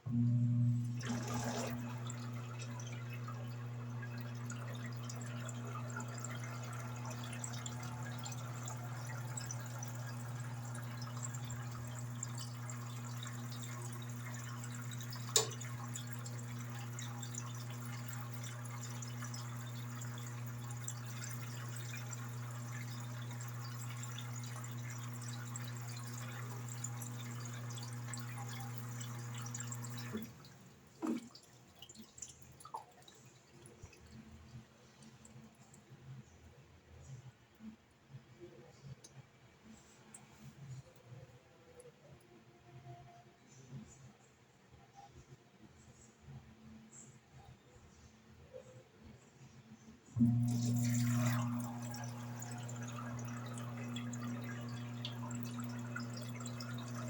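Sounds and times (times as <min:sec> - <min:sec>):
washing machine electric hum: 0:00.0 - 0:36.5, 0:50.1 - 0:57.0
water trickling and splashing: 0:00.9 - 0:34.6, 0:50.2 - 0:57.0
washing machine click: 0:15.3 - 0:15.7.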